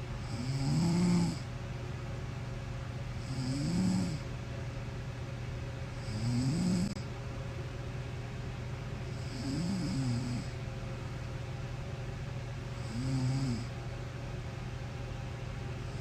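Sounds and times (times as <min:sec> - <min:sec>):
steady low hum: 0:00.0 - 0:16.0
woman snoring: 0:00.2 - 0:01.5, 0:03.2 - 0:04.2, 0:06.0 - 0:07.0, 0:09.1 - 0:10.6, 0:12.8 - 0:13.7.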